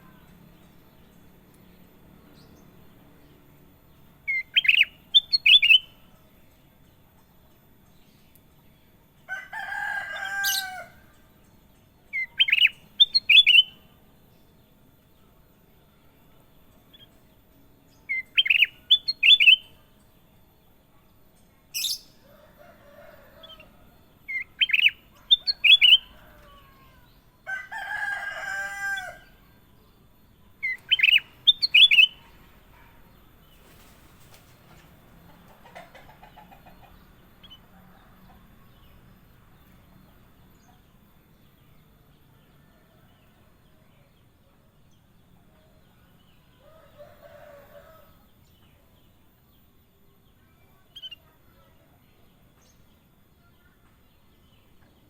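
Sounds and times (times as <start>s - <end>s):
longer lower bird call: 12.2s - 13.9s, 30.6s - 33.9s.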